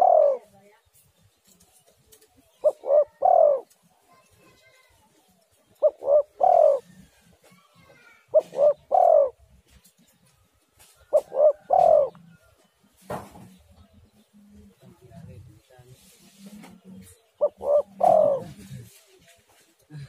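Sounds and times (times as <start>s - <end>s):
dove cooing: 0.0s - 0.5s, 2.6s - 3.8s, 5.7s - 7.2s, 8.2s - 9.5s, 11.0s - 12.4s, 16.6s - 19.1s.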